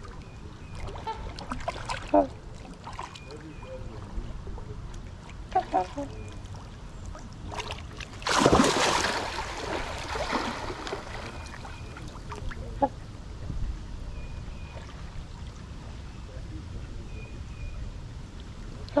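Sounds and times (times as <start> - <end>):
light water splashing: 0.0 - 12.9
loud water splash: 7.5 - 12.5.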